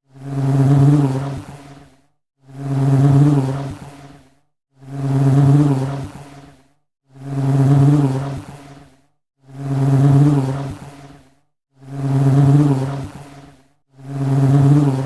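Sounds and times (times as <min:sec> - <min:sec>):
bee buzzing past: 0:00.2 - 0:01.9, 0:02.5 - 0:04.2, 0:04.9 - 0:06.6, 0:07.2 - 0:08.8, 0:09.6 - 0:11.3, 0:11.9 - 0:15.0.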